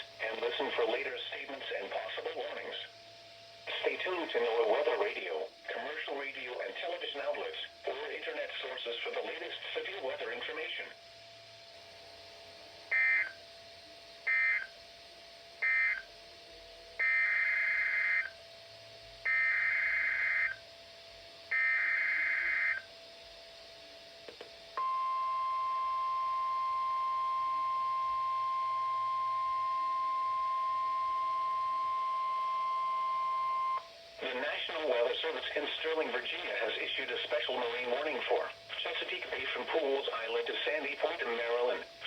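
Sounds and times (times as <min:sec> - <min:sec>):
steady warning alarm tone: 0:12.9 - 0:13.4, 0:14.2 - 0:14.8, 0:15.6 - 0:16.2, 0:17.0 - 0:18.5, 0:19.2 - 0:20.7, 0:21.5 - 0:22.9, 0:24.8 - 0:35.2.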